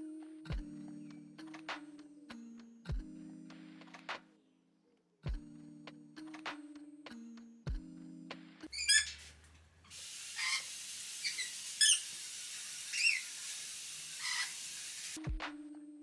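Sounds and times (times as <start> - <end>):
music: 0.0 - 8.7, 15.2 - 16.0
pet birds calling: 8.8 - 9.3, 10.0 - 15.2
hose spraying water: 8.8 - 15.2.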